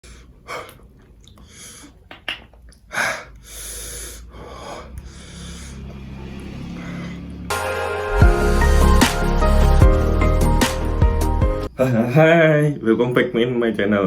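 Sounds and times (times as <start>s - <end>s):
breathy hissing noises: 2.9s - 7.5s
soft music: 7.5s - 11.8s.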